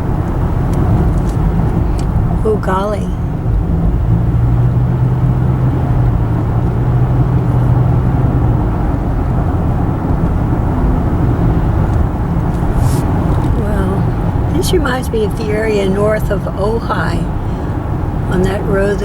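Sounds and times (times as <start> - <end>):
tyre and engine rumble: 0.0 - 19.0
low drone: 9.9 - 19.0.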